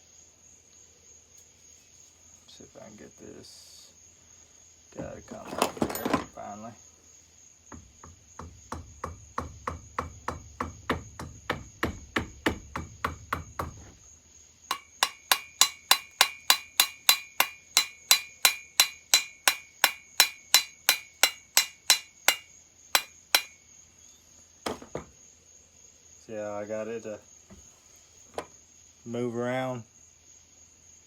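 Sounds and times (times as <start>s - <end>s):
hammer tapping on metal: 14.7s - 23.6s.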